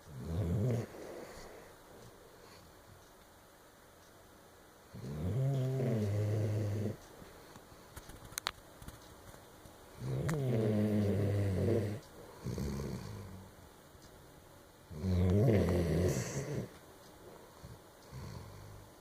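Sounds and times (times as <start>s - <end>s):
dog snoring: 0.1s - 1.7s, 4.9s - 7.0s, 10.0s - 13.5s, 14.9s - 16.7s, 17.6s - 18.8s.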